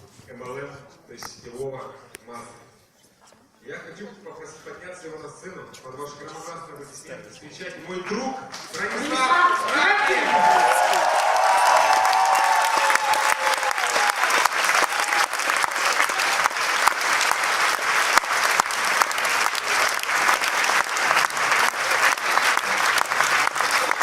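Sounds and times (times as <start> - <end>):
large audience applauding: 8.8 - 24.0.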